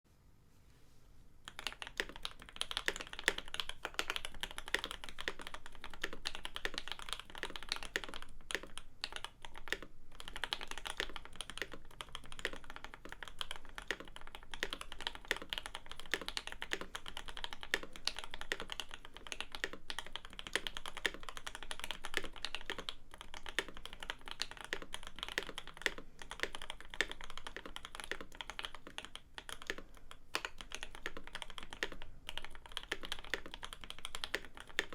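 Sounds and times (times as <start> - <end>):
fast typing on mechanical keyboard: 1.5 - 34.9.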